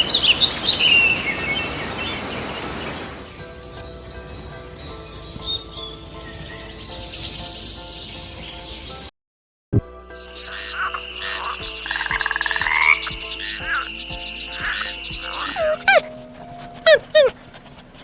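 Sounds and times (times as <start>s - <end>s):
chirps: 3.7s - 9.1s, 10.1s - 16.0s
frogs calling in trills: 10.2s - 17.9s.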